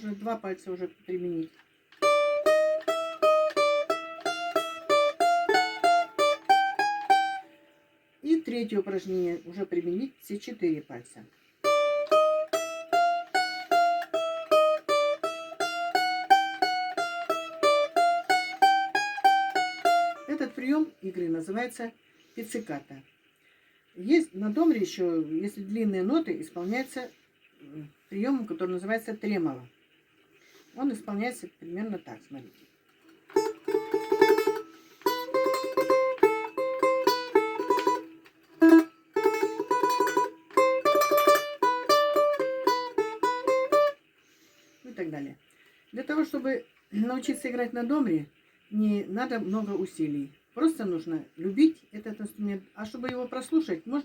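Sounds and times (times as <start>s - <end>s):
domra plucked notes: 2.0s - 8.2s, 11.6s - 21.6s, 33.1s - 44.1s.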